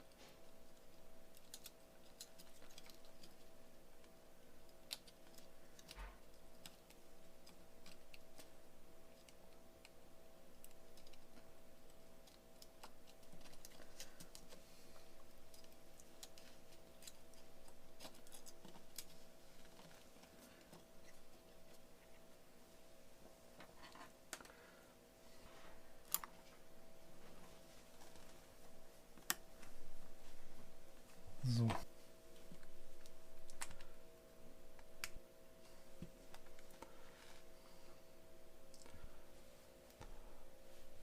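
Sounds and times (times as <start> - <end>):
low electrical hum: 0.0 - 41.0.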